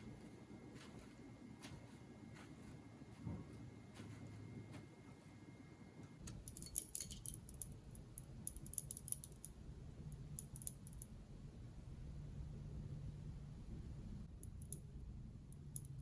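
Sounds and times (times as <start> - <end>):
small metal pieces jingling: 6.4 - 7.7.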